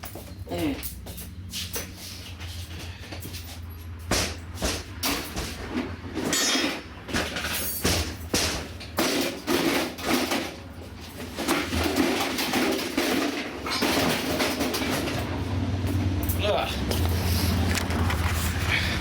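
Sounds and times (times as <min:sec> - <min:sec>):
small gasoline engine running roughly: 0:11.4 - 0:19.0.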